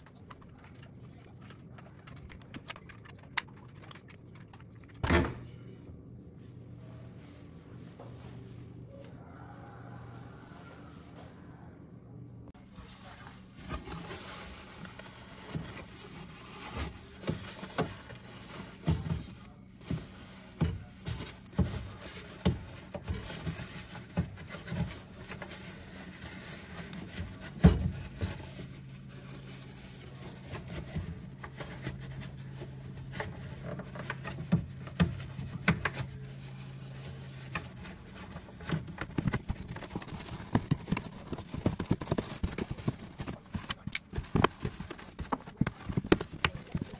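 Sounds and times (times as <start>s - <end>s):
low steady hum: 0.0s - 46.9s
hard objects clicking and knocking: 38.6s - 46.9s.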